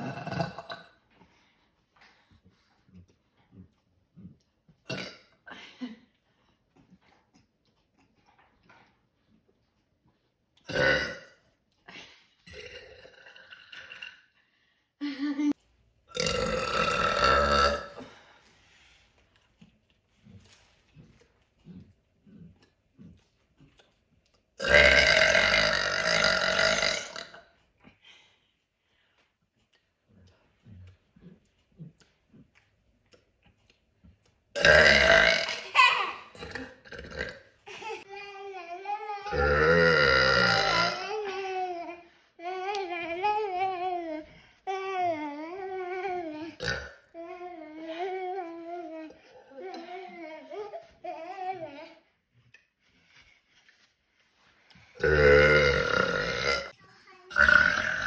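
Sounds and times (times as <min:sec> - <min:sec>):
woman burping: 0:00.0 - 0:01.0, 0:04.9 - 0:05.6, 0:10.7 - 0:11.4, 0:12.5 - 0:14.3, 0:16.1 - 0:18.2, 0:24.6 - 0:27.5, 0:34.6 - 0:37.5, 0:39.3 - 0:41.0, 0:46.6 - 0:47.0, 0:55.0 - 0:58.0.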